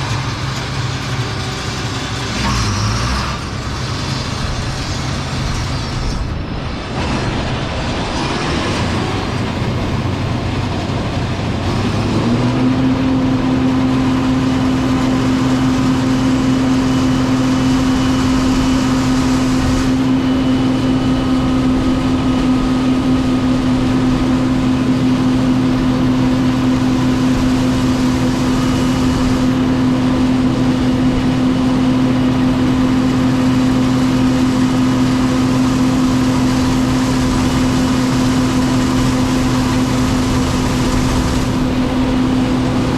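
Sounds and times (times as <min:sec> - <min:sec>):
combine harvester humming: 0:00.0 - 0:42.9.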